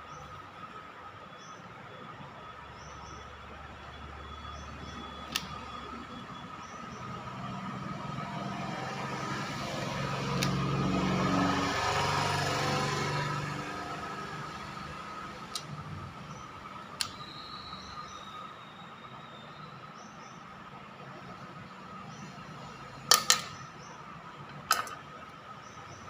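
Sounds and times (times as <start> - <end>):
sharp clicks: 5.2 - 5.7, 10.3 - 10.7, 15.4 - 17.3
vehicle engine passing by: 7.0 - 16.6.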